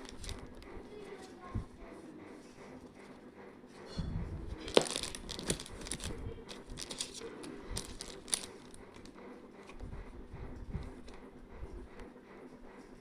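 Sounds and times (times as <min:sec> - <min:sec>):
plastic packaging crinkling: 0:00.0 - 0:00.7, 0:04.6 - 0:09.1.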